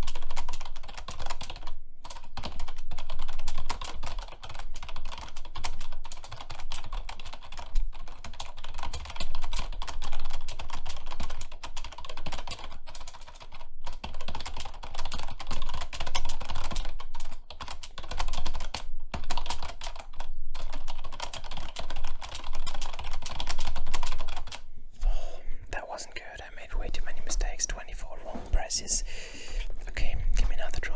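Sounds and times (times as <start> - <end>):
fast typing on computer keyboard: 0.0 - 24.7.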